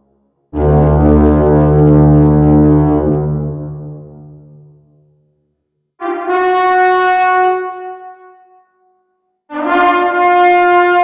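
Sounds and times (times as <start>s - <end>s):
war horn blasts: 9.5s - 11.0s.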